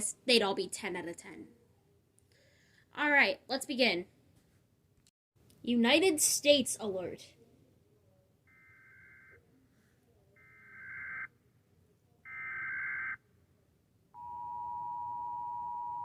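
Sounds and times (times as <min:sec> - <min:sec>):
two-tone attention signal: 0:14.2 - 0:16.0.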